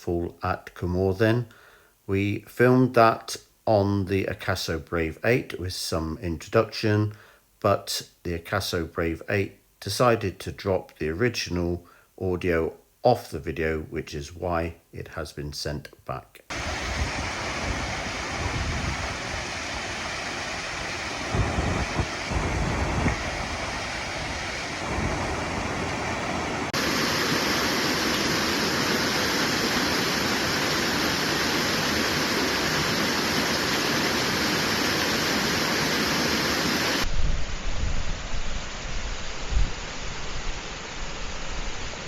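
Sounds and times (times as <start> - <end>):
wind buffeting microphone: 16.5 - 26.8
waterfall rushing: 16.5 - 42.0.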